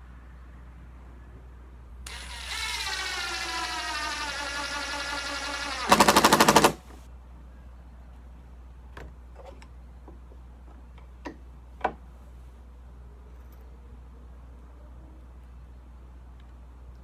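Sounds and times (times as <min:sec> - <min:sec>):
impact driver motor whining: 0:02.1 - 0:07.0
impact driver rapid hammering: 0:02.1 - 0:07.0.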